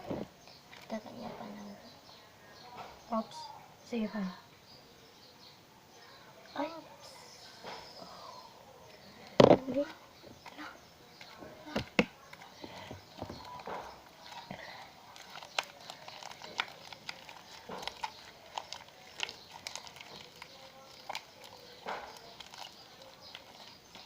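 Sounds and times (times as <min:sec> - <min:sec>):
sticky slime squelching: 0:10.4 - 0:24.0.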